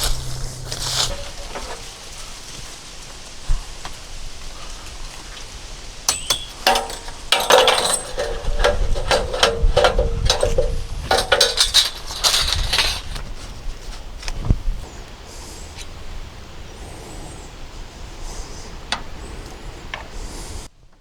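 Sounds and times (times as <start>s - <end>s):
metal clanks and clinks: 0.0s - 2.0s, 6.1s - 13.5s.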